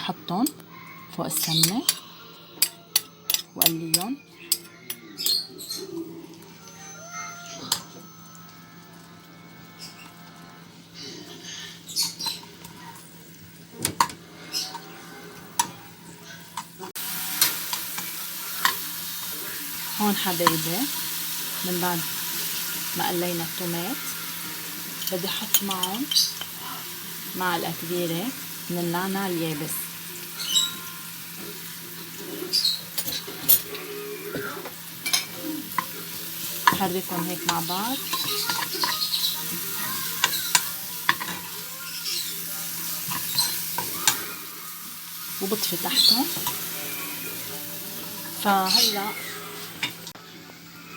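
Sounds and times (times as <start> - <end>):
garlic sizzling: 1.2 - 8.2, 8.8 - 50.2
metal spoon scraping a pan: 1.3 - 5.8, 22.4 - 26.9, 35.0 - 44.4.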